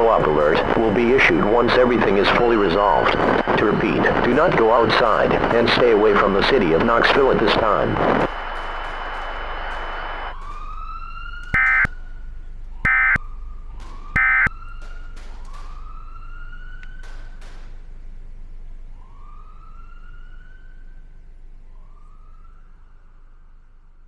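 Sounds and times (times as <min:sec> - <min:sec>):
police sirens wailing: 0:00.0 - 0:12.2, 0:12.8 - 0:17.8, 0:19.0 - 0:21.0, 0:21.7 - 0:23.6.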